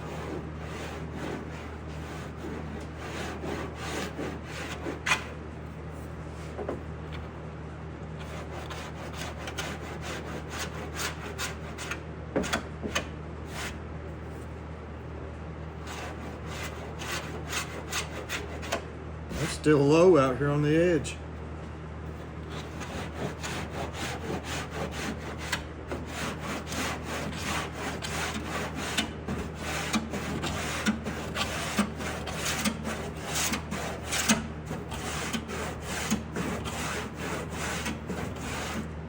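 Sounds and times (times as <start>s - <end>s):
hand sanding filler: 0.0s - 5.3s, 8.2s - 12.0s, 15.9s - 19.8s, 22.5s - 38.9s.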